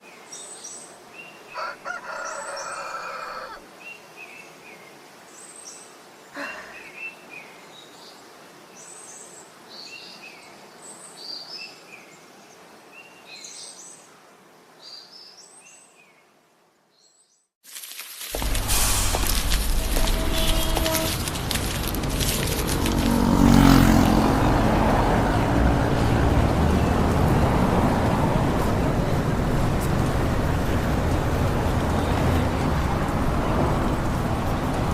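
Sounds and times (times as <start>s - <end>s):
rooster crowing: 1.5s - 3.6s.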